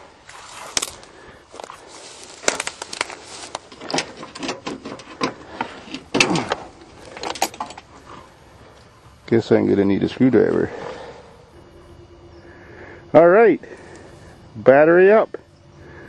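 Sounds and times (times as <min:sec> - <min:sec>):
hands working metal parts: 0:00.7 - 0:08.0.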